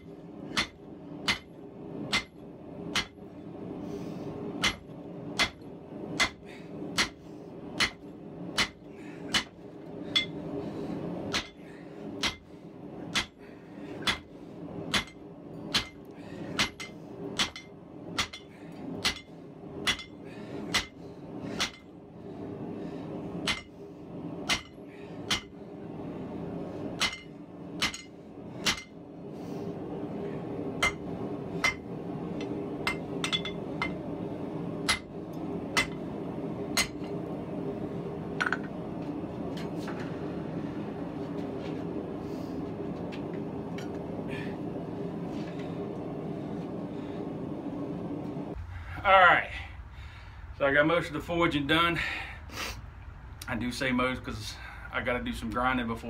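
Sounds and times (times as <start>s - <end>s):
steady low hum: 0.0s - 56.0s
hammer striking steel on anvil: 0.5s - 1.5s, 2.1s - 3.2s, 4.6s - 5.6s, 6.2s - 6.4s, 7.0s - 7.2s, 7.8s - 8.0s, 8.6s - 10.4s, 11.3s - 11.6s, 12.2s - 12.4s, 13.1s - 13.4s, 14.0s - 14.3s, 14.9s - 16.0s, 16.6s - 21.0s, 21.6s - 21.8s, 23.4s - 23.7s, 24.5s - 25.5s, 27.0s - 29.0s, 30.8s - 31.9s, 32.8s - 34.0s, 34.8s - 35.1s, 35.7s - 36.0s, 36.8s - 37.1s.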